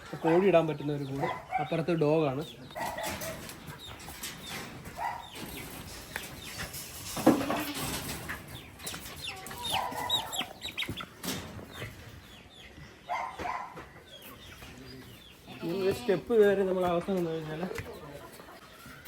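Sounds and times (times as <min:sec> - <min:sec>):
chickens clucking: 0:00.0 - 0:19.0
chicken squawks: 0:09.2 - 0:11.2.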